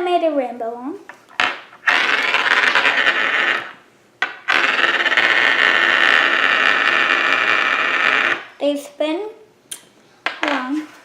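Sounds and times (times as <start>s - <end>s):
marble spinner whirring: 1.4s - 8.6s.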